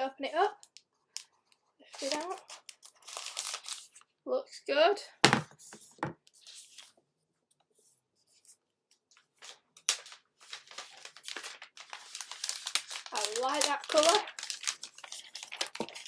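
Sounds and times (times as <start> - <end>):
packaging rustling and scraping: 1.9 - 4.1, 9.3 - 16.0.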